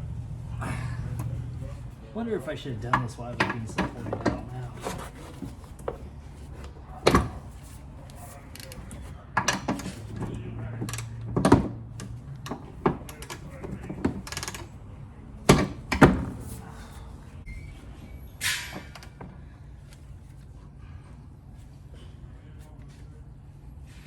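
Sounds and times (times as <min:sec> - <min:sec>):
tools and metal parts clanking: 0:02.8 - 0:14.8.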